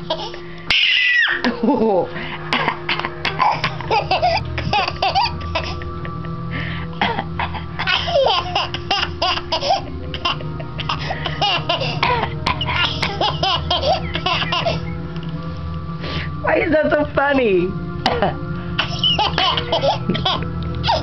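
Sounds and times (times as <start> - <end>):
baby giggling: 0.0 - 0.4, 2.6 - 5.9, 7.0 - 15.0, 18.8 - 21.0
adult coughing: 2.5 - 4.4, 10.8 - 14.0.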